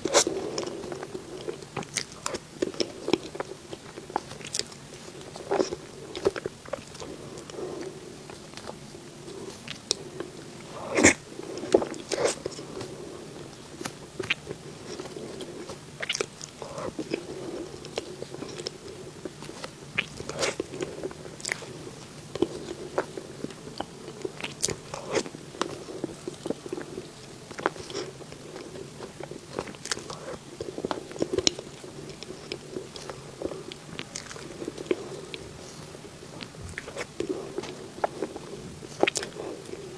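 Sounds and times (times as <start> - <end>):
person chewing dessert: 0.0 - 39.9
crunchy bites: 23.8 - 39.9.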